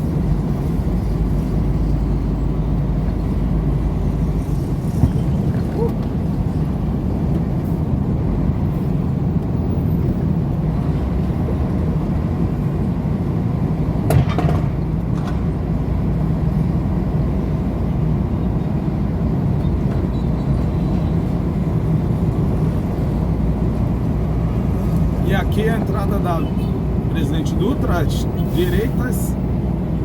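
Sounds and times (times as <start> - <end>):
truck diesel engine: 0.0 - 30.0
tyre noise on highway: 0.0 - 30.0.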